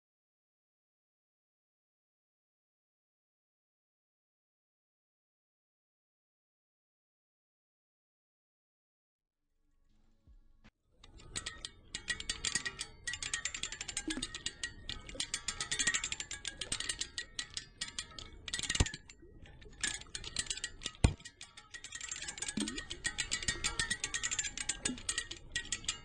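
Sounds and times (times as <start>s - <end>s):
music with fast ticking rhythm: 11.0s - 26.0s.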